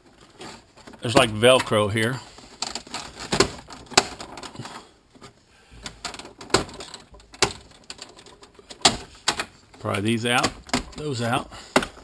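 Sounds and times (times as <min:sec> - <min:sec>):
car trim pieces clicking and knocking: 0:02.5 - 0:12.0.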